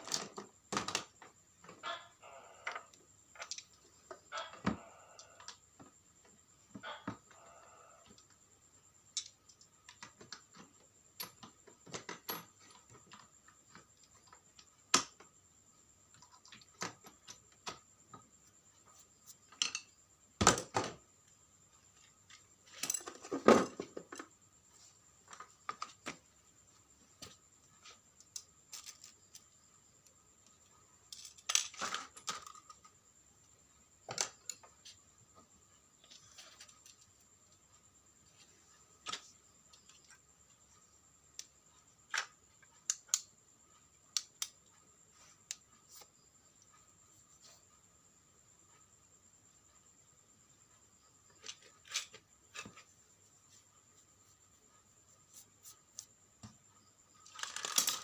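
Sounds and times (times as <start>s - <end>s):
clatter of small hard parts: 0.0s - 2.0s, 22.0s - 24.4s, 28.3s - 29.5s, 31.1s - 33.0s, 57.2s - 58.0s.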